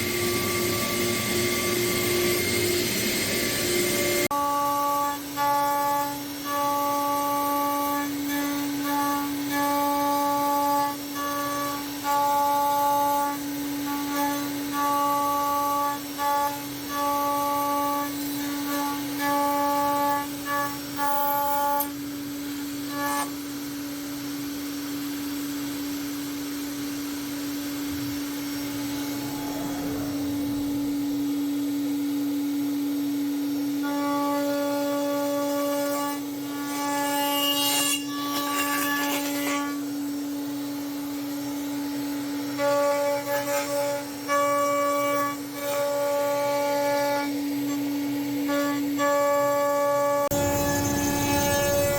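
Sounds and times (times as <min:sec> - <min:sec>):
router spindle cutting wood: 0:37.9 - 0:51.9.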